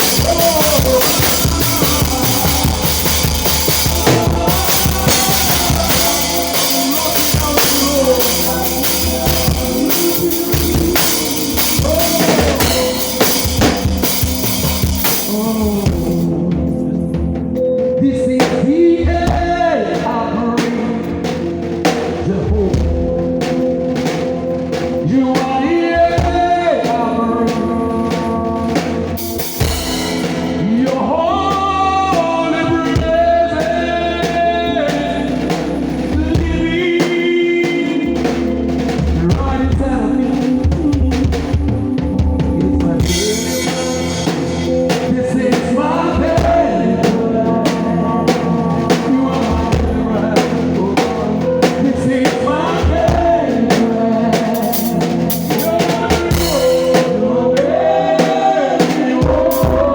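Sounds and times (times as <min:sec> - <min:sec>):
cymbal crashes: 0:00.0 - 0:16.2, 0:29.2 - 0:30.6
person singing: 0:00.0 - 0:17.1, 0:18.0 - 0:21.4, 0:25.0 - 0:59.9
drum kit groove: 0:00.0 - 0:59.9
sustained keyboard chords: 0:00.0 - 0:59.9.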